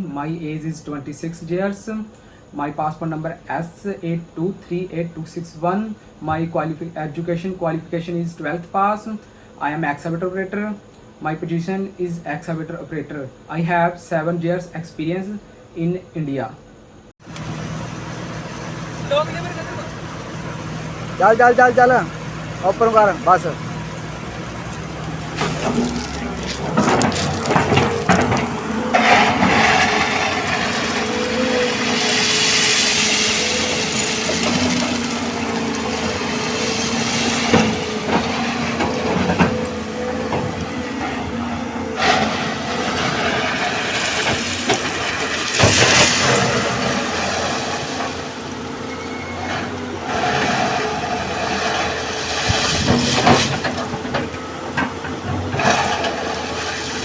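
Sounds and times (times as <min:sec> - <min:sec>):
excavator engine whine: 0:17.2 - 0:57.0
excavator knocks: 0:18.9 - 0:31.5, 0:33.8 - 0:47.7, 0:51.5 - 0:57.0.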